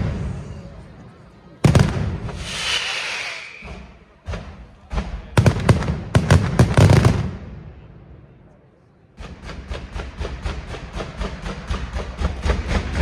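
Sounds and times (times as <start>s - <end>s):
fireworks crackling: 1.6s - 4.5s, 5.4s - 7.5s
fireworks bangs: 1.6s - 8.4s.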